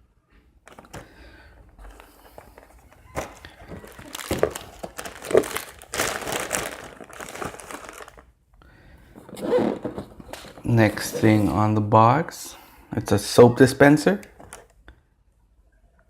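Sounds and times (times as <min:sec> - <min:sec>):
packaging crinkling: 0:00.6 - 0:08.3.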